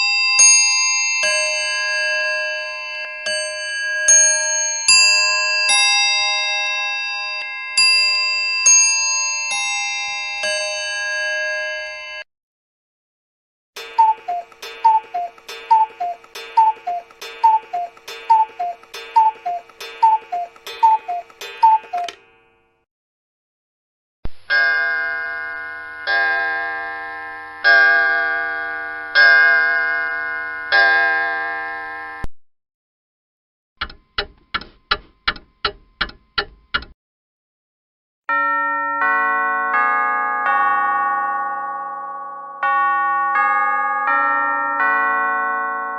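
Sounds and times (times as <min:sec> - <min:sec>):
clock chime bell notes: 0:00.0 - 0:12.2, 0:38.3 - 0:45.9
clock ticking: 0:13.8 - 0:22.2, 0:33.8 - 0:37.0.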